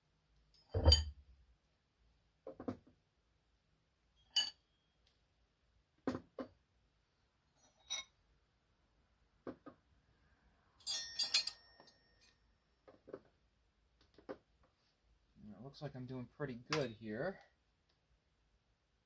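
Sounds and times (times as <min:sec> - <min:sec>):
steel wrenches clinking: 0:04.2 - 0:04.7, 0:07.6 - 0:08.2, 0:10.8 - 0:12.4.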